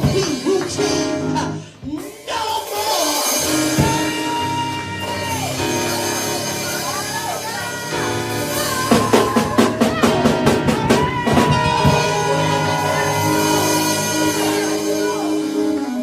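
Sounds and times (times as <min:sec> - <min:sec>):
fast drum hits: 0:00.0 - 0:01.2, 0:08.4 - 0:15.3
person preaching: 0:00.0 - 0:05.7, 0:06.7 - 0:16.0
sustained keyboard chords: 0:03.4 - 0:16.0.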